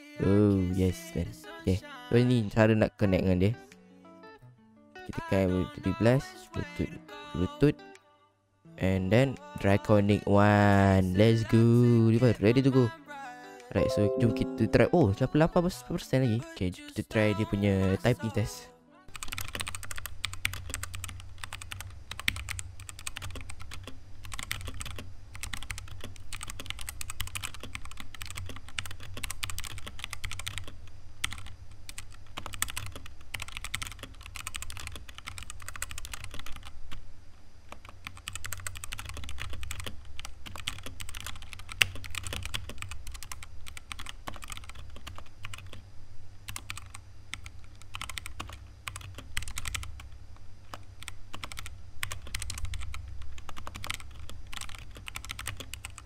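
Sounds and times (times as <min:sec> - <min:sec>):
mechanical keyboard typing: 0:19.1 - 0:36.8, 0:37.7 - 0:45.8, 0:46.5 - 0:50.1, 0:50.7 - 0:56.0.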